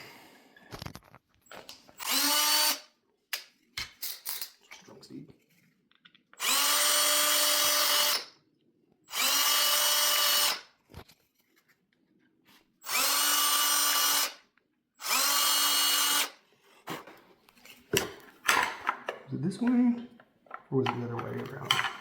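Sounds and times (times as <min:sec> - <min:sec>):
electric drill whining: 0:02.0 - 0:02.9, 0:06.4 - 0:08.3, 0:09.1 - 0:10.7, 0:12.8 - 0:14.4, 0:15.0 - 0:16.4.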